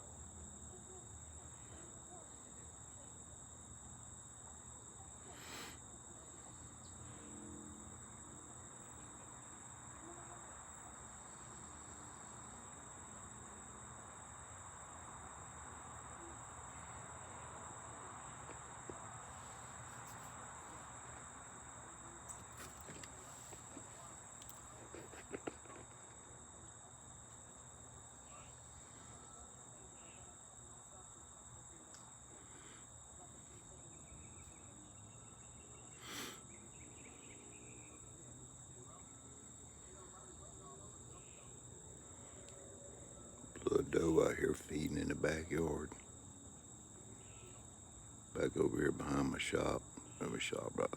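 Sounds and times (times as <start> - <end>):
crickets chirping: 0.0 - 50.9.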